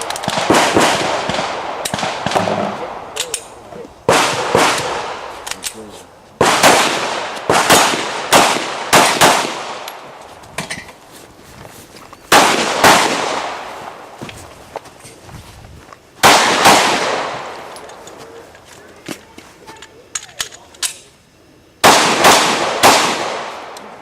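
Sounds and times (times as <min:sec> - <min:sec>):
pistol shots ringing: 0:04.1 - 0:05.8, 0:06.4 - 0:10.1, 0:12.3 - 0:13.6, 0:16.2 - 0:18.0, 0:21.8 - 0:23.8.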